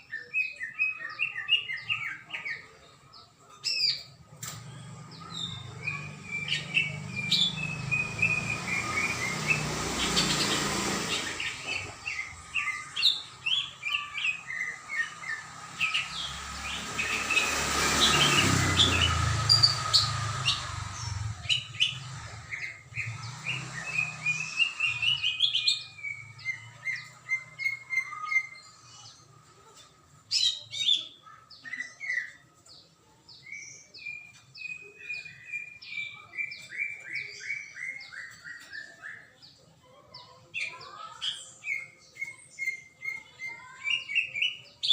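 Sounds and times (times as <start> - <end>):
bird chirping and whistling: 5.3 - 29.1, 33.5 - 39.4
broad rushing noise: 5.9 - 25.4.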